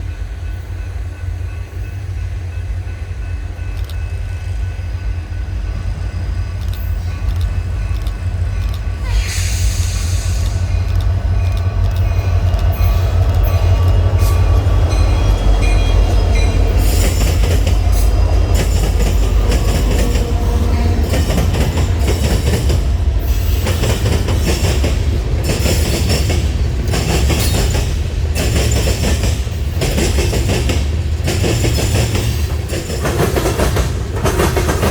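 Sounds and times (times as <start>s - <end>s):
train rumbling past: 0.0s - 34.9s
wheels clacking over rail joints: 10.2s - 34.9s.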